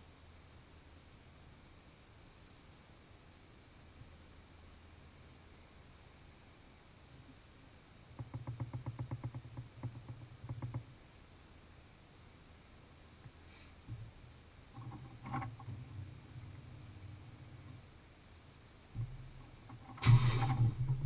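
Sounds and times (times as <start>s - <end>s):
sharp crack: 19.8s - 21.0s
engine cranking on starter: 19.9s - 21.0s.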